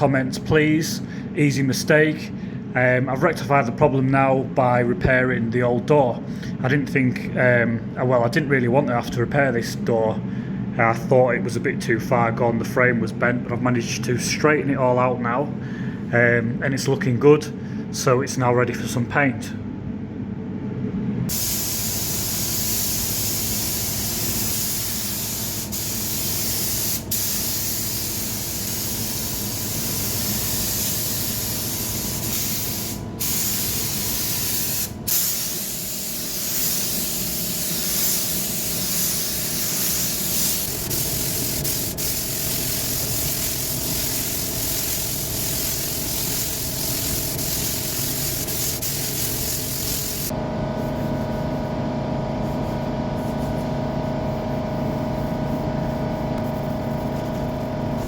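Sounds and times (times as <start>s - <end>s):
paint spray gun hissing: 21.3s - 50.3s.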